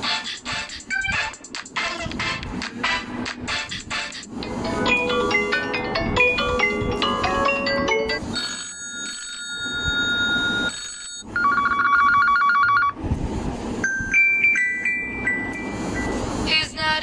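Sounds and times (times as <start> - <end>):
plinking ringtone tune: 4.4 - 12.9, 13.8 - 16.1
melodic ringtone: 4.4 - 13.0, 13.8 - 16.2
rapid trilling phone ring: 5.0 - 13.0
steady held electronic tone: 13.8 - 16.4.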